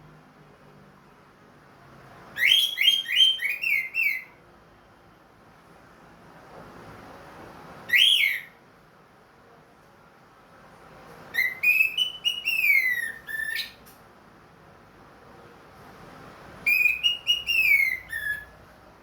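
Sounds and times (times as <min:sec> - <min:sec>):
thrush singing whistled notes: 0:02.4 - 0:04.3, 0:07.9 - 0:08.6, 0:11.3 - 0:13.8, 0:16.6 - 0:18.6.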